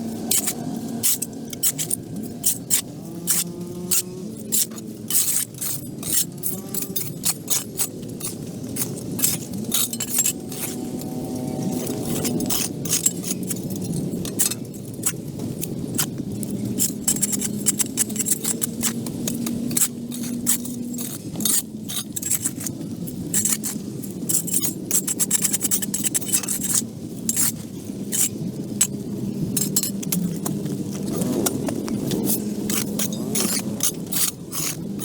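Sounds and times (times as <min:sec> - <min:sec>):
hard objects scraping and clinking: 0:00.0 - 0:35.0.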